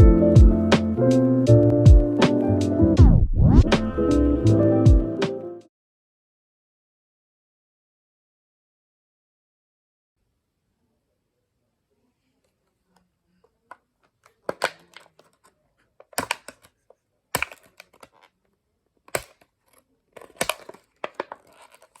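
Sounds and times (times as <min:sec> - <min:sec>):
plastic packaging crackling and snapping: 0:14.0 - 0:18.4, 0:19.1 - 0:22.0.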